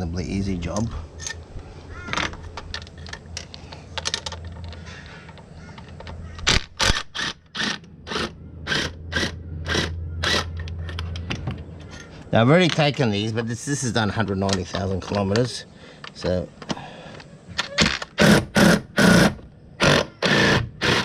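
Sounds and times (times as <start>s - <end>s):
sharp clicking bursts: 4.0s - 11.2s, 17.9s - 21.0s.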